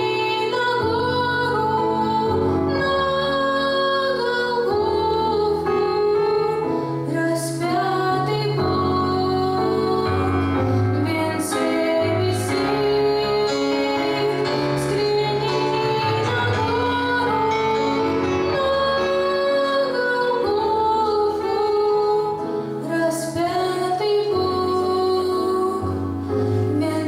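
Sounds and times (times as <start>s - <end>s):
instrumental accompaniment: 0.0s - 27.0s
women singing: 0.0s - 27.0s.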